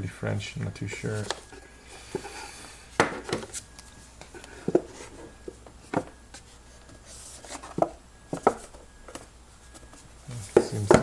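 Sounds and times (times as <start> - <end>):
packaging rustle: 0.8 - 2.3.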